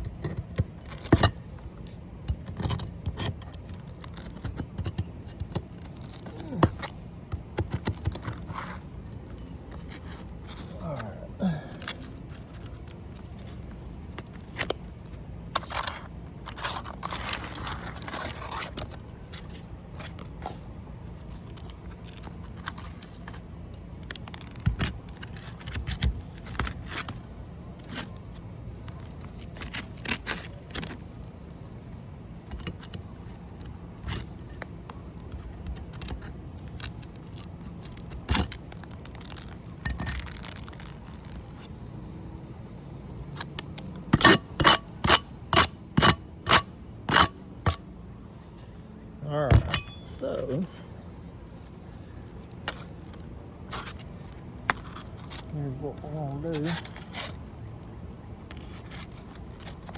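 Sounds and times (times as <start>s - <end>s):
hand tools clicking and scraping nails: 2.2s - 13.6s, 43.3s - 47.9s, 49.5s - 50.6s.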